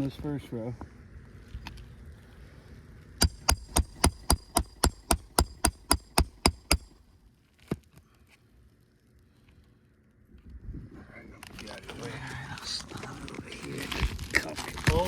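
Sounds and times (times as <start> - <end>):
hammer striking metal tool: 3.2 - 6.9.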